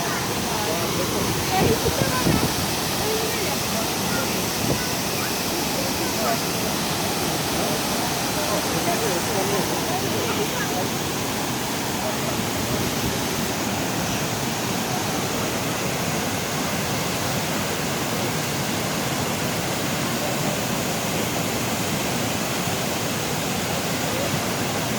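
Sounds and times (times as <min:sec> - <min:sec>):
waterfall rushing: 0:00.0 - 0:24.9.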